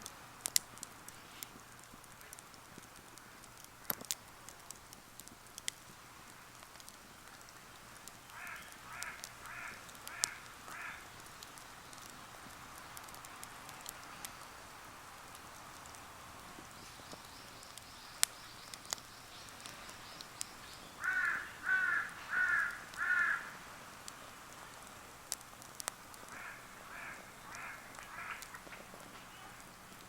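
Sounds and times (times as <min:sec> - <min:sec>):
campfire crackling: 0:00.0 - 0:30.0
crow cawing: 0:08.3 - 0:11.1, 0:21.0 - 0:23.6, 0:26.3 - 0:28.6.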